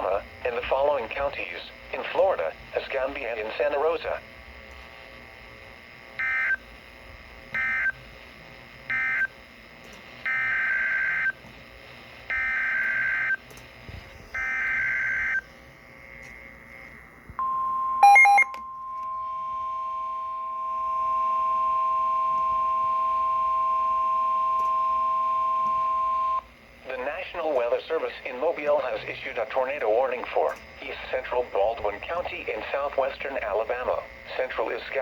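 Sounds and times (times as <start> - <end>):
steady alarm tone: 6.2 - 6.6, 7.5 - 8.0, 8.9 - 9.4, 10.2 - 11.4, 12.3 - 13.4, 14.3 - 26.5
crackle of beeps: 17.4 - 26.4.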